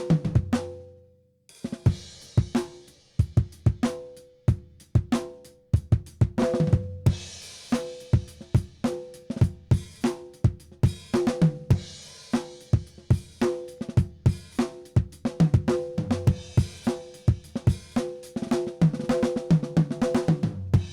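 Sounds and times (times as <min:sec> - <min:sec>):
drum kit playing: 0:01.6 - 0:04.0, 0:04.9 - 0:20.9.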